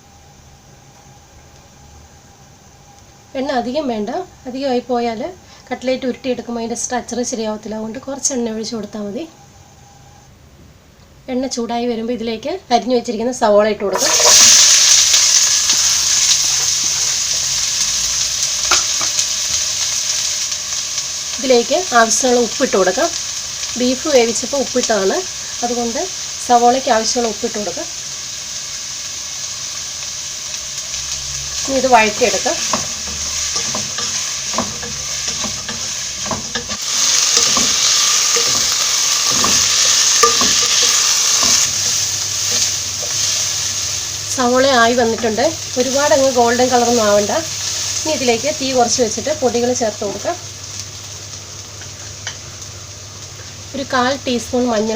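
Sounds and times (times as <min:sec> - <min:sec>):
onions sizzling in hot oil: 0:00.0 - 0:10.2, 0:11.3 - 0:54.9
spoon scraping a pan: 0:32.0 - 0:43.7.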